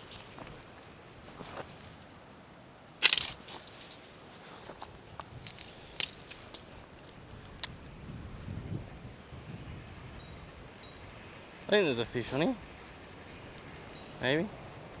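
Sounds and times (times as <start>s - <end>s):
small bell jingling: 0.0s - 7.1s.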